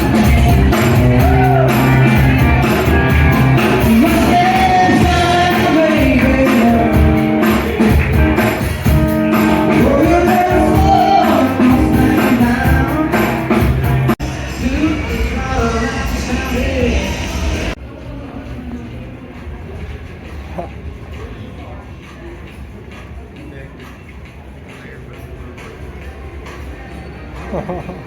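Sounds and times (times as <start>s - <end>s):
person singing over a band: 3.6s - 7.9s, 9.4s - 17.7s.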